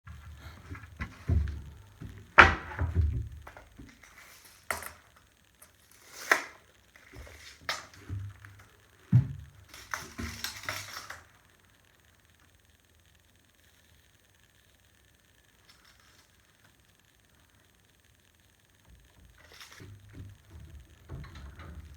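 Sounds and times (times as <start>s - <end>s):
objects thunking and clattering: 0.1s - 5.0s, 7.1s - 11.2s, 19.5s - 21.9s.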